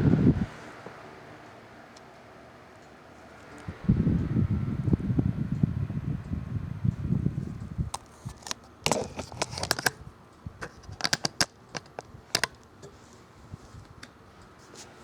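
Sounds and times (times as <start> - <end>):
handling clicks and crackles: 7.5 - 15.0.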